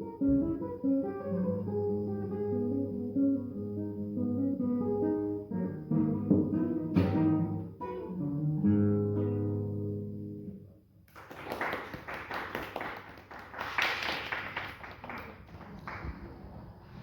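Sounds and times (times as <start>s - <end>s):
fingerstyle guitar: 0.0s - 10.9s.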